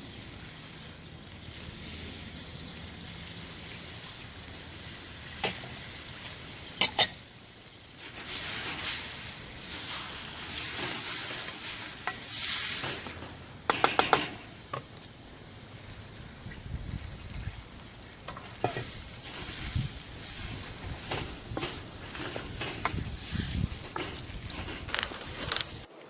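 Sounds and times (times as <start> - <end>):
chicken frying in hot oil: 0.0 - 25.9
knocks against the pan: 13.7 - 14.4.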